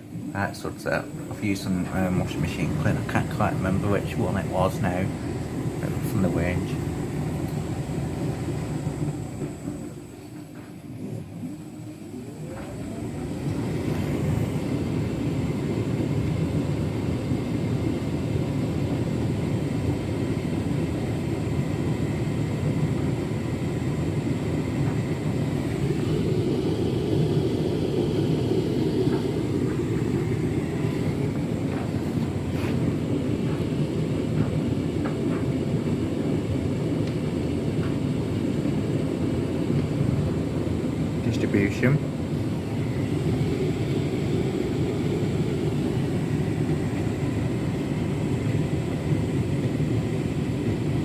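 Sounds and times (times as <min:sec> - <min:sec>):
washing machine motor whine: 0:00.0 - 0:51.0
washing machine drum rumble: 0:24.6 - 0:39.0.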